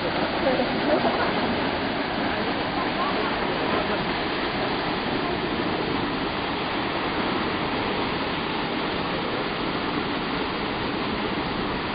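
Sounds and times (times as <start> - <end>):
waterfall rushing: 0.0 - 11.9.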